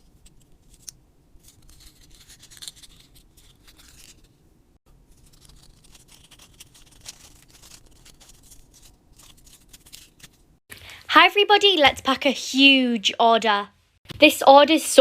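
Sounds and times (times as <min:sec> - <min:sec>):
fidget toys scratching and crinkling: 0:00.0 - 0:04.5, 0:05.1 - 0:10.5.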